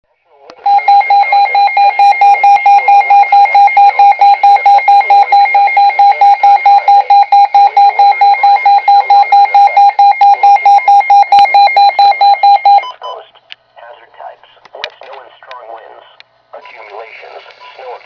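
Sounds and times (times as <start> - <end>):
rapid electronic alarm beeping: 0.6 - 13.2.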